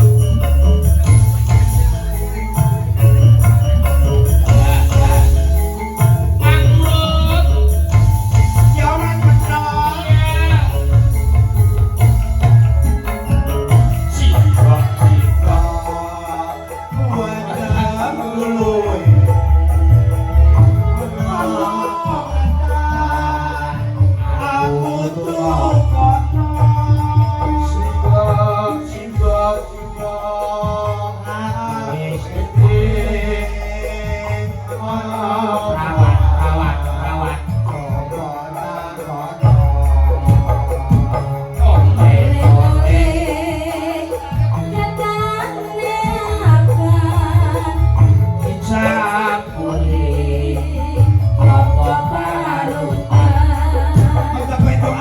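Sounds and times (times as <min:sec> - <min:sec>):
heavy pulsing bass beat: 0:00.0 - 0:24.3, 0:25.5 - 0:38.5
live band music: 0:00.0 - 0:55.0
person singing: 0:00.0 - 0:55.0.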